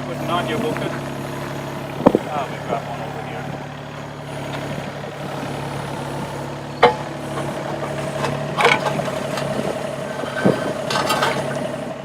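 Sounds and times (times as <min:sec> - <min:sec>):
excavator diesel engine running: 0:00.0 - 0:12.0
short clatter: 0:06.7 - 0:11.7.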